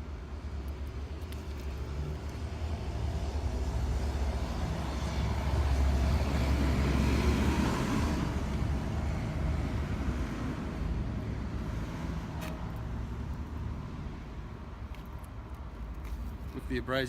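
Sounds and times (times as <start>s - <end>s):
traffic rumble: 0.0s - 17.0s
vehicle passing: 2.0s - 14.3s.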